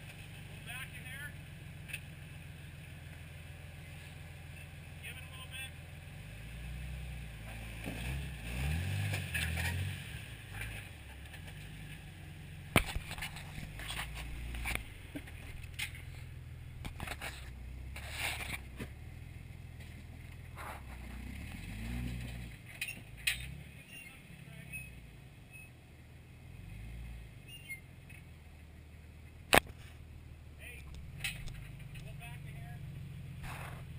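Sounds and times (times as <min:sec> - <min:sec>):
engine running low: 0:00.0 - 0:33.9
scrapes and knocks: 0:12.8 - 0:19.0, 0:19.8 - 0:23.6.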